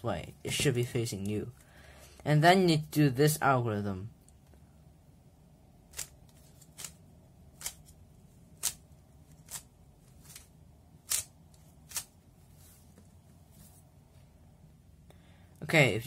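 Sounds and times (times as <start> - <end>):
speed cube layers clacking: 5.9 - 7.0, 7.6 - 8.0, 8.6 - 12.1.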